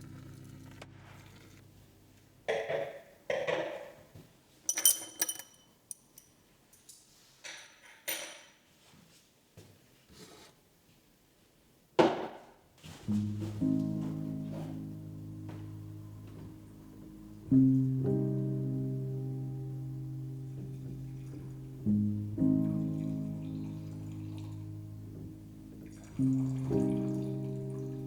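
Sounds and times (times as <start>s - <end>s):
gentle instrumental music: 0.0s - 2.5s, 13.0s - 28.0s
objects knocking and clinking: 4.7s - 8.6s.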